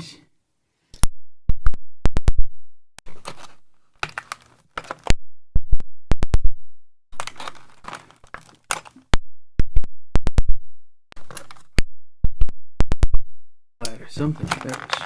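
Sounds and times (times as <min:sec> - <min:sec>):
rustling handling noise: 0:03.0 - 0:05.1, 0:07.2 - 0:09.1, 0:11.2 - 0:11.8, 0:13.8 - 0:15.0.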